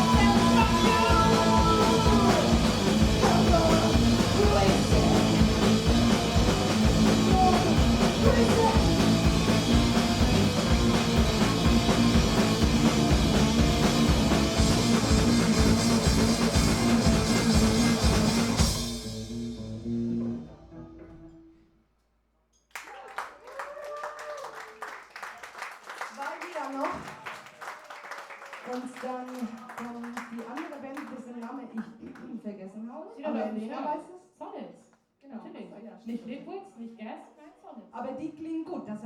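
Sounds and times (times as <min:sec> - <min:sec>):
person singing: 0:00.0 - 0:05.6, 0:07.1 - 0:08.9
loud drums: 0:00.0 - 0:19.4
punk band playing live: 0:00.0 - 0:19.8.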